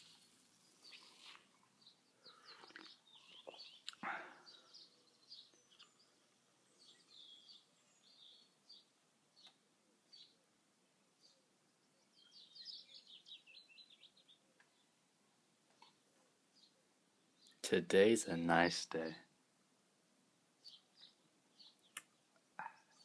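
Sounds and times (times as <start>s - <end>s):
faint birds chirping: 0.0s - 23.0s.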